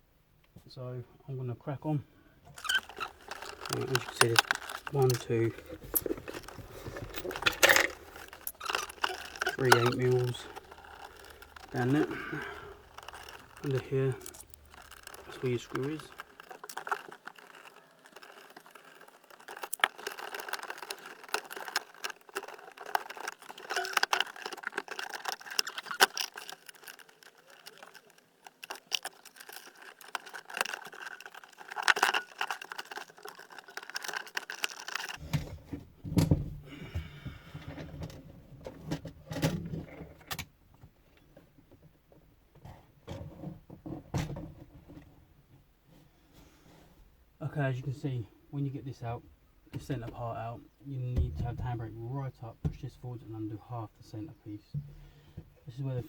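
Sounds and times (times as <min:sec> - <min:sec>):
plastic trim rattling: 0:02.5 - 0:35.4
hand tools clinking: 0:02.6 - 0:35.2.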